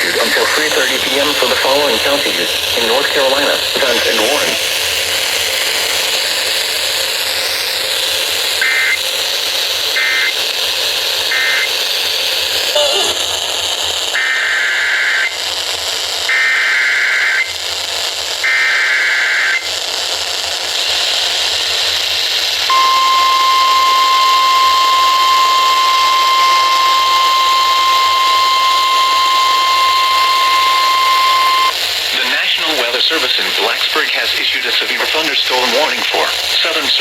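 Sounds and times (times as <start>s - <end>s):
radio signal hiss: 0.0s - 6.4s, 20.6s - 37.0s
steady warning alarm tone: 22.7s - 31.8s
warbling digital data bursts: 22.7s - 31.8s.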